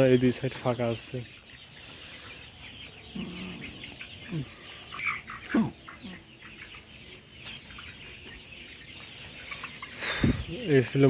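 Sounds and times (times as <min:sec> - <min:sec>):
chickens chirping and clucking: 0:00.0 - 0:11.0.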